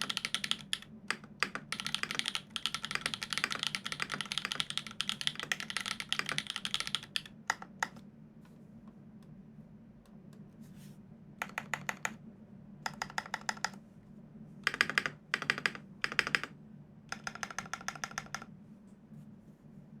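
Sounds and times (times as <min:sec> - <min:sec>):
mechanical keyboard typing: 0:00.0 - 0:08.0, 0:11.4 - 0:12.2, 0:12.8 - 0:13.8, 0:14.6 - 0:18.5.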